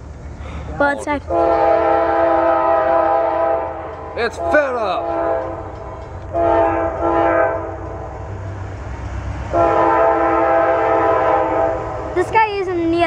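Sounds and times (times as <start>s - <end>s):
train rumble: 0.0s - 13.0s
locomotive air horn chord: 1.3s - 8.5s, 9.5s - 12.2s.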